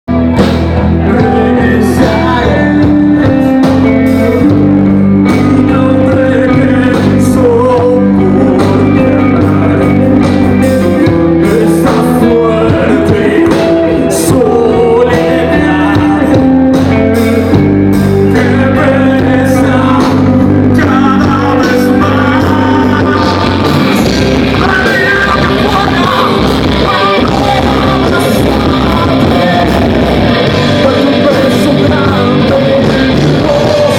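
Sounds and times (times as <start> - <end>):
person singing: 0.1 - 33.9
rock band playing live: 0.1 - 33.9.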